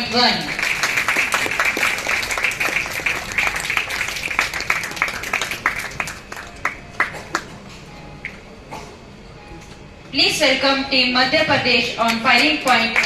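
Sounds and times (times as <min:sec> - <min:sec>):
crowd applauding: 0:00.0 - 0:07.6, 0:12.1 - 0:13.0.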